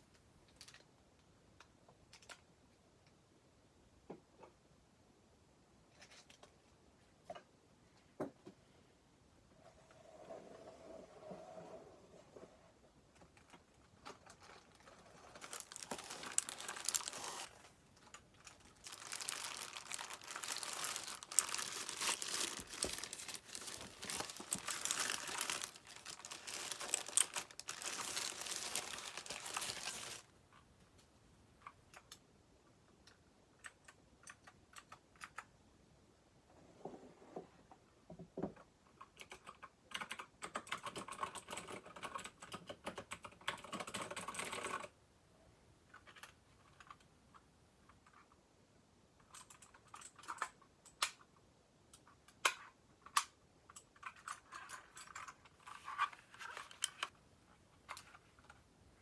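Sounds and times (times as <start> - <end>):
packaging crinkling and rustling: 13.5 - 30.3.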